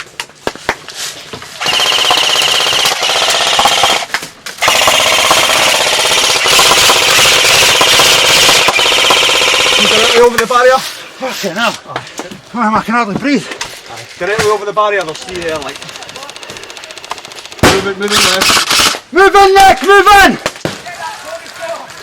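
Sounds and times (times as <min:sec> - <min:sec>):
airsoft gun rapid rattle: 0:01.6 - 0:10.2, 0:15.0 - 0:19.0.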